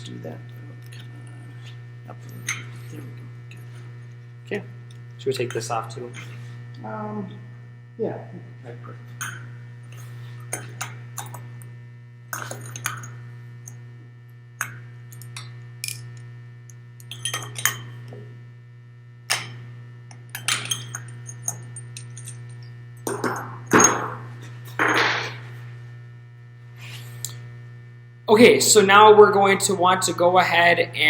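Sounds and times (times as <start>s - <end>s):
mains hum: 0.0s - 31.0s
tools clinking and knocking: 17.1s - 17.9s, 20.3s - 24.2s.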